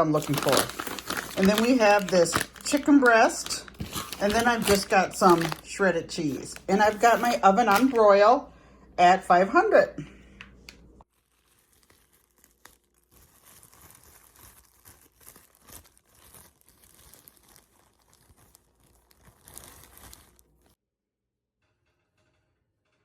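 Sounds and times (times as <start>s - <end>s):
plastic packaging crinkling: 0.0s - 8.0s, 11.1s - 20.8s.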